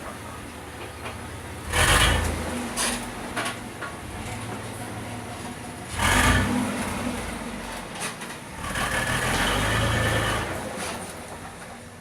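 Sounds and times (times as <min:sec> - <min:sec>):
engine revving: 0:01.6 - 0:02.6, 0:05.9 - 0:07.5, 0:08.6 - 0:10.9.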